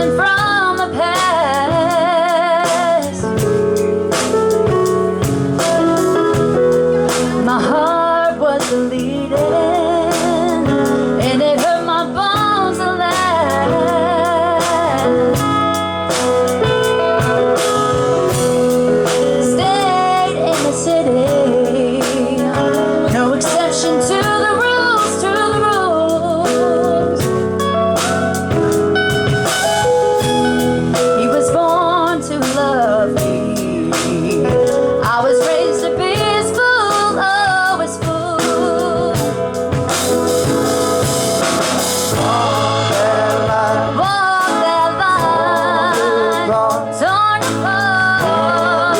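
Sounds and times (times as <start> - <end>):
person singing with vibrato: 0.0 - 28.6, 29.2 - 48.9
drum kit: 0.0 - 48.9
guitar: 0.0 - 48.9.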